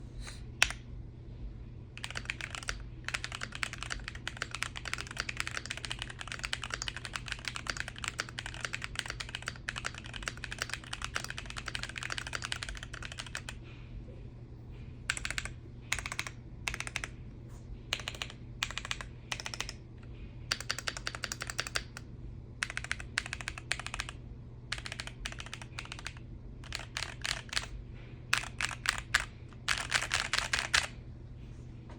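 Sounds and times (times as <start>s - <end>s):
mechanical keyboard typing: 2.0s - 13.6s, 15.1s - 17.1s, 17.9s - 19.8s, 20.5s - 22.0s, 22.6s - 27.7s, 28.3s - 30.9s.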